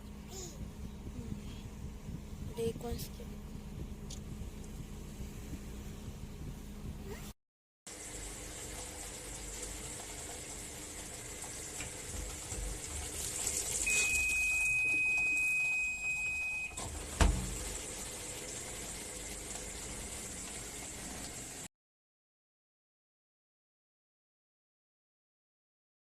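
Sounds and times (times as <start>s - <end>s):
water running into washing machine: 7.9s - 21.7s.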